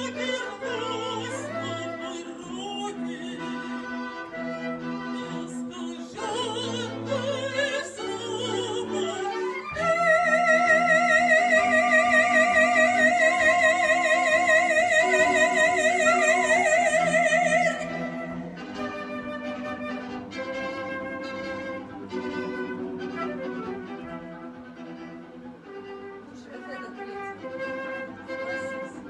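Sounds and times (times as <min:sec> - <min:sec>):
operatic soprano singing: 0:00.0 - 0:21.2
flute: 0:00.0 - 0:29.0
string quartet playing: 0:00.0 - 0:29.0.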